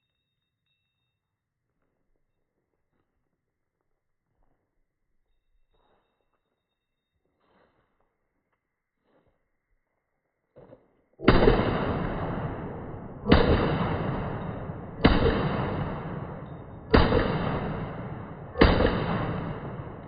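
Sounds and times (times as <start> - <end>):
rifle shots with echo: 11.2 - 20.0.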